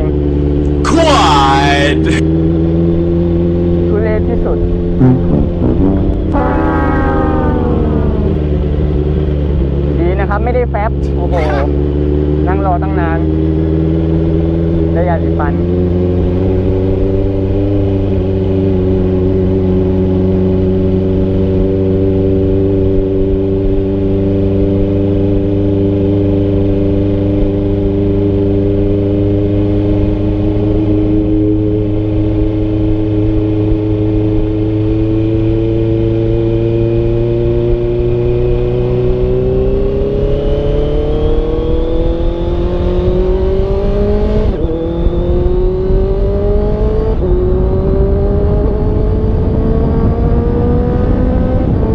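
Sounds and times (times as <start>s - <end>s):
motorcycle engine revving: 4.9s - 9.1s.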